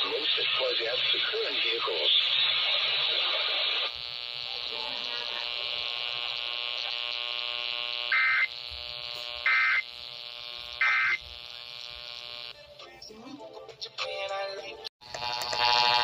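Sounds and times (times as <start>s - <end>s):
steady electronic buzz: 0.0s - 12.6s, 15.0s - 16.0s
shrill digital data bursts: 8.0s - 8.6s, 9.4s - 9.9s, 10.6s - 12.5s.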